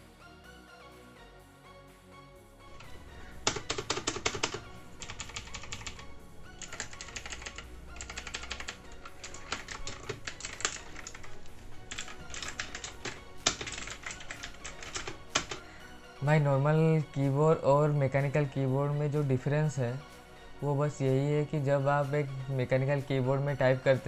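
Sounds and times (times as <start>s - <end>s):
mechanical keyboard typing: 2.8s - 6.0s, 6.6s - 15.6s.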